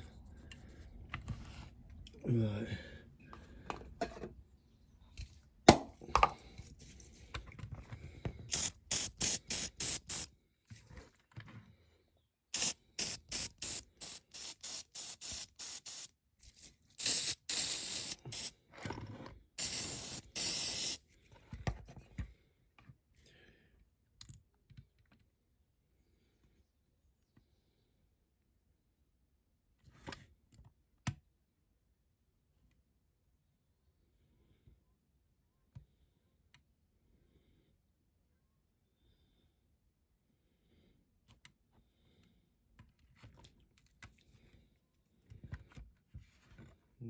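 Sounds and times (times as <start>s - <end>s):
spray hissing bursts: 8.5s - 10.3s, 12.6s - 16.1s, 17.0s - 18.5s, 19.6s - 21.0s.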